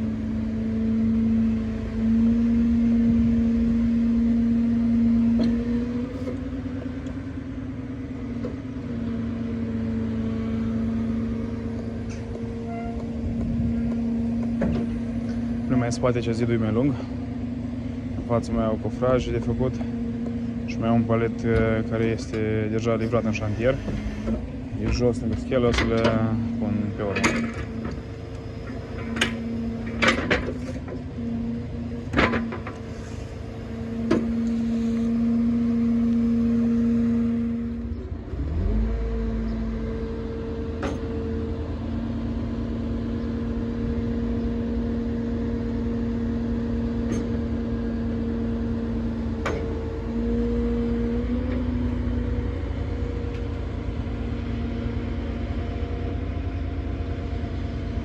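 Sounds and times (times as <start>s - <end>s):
diesel engine humming: 0.0s - 58.0s
sharp clicks and knocks: 27.1s - 31.0s.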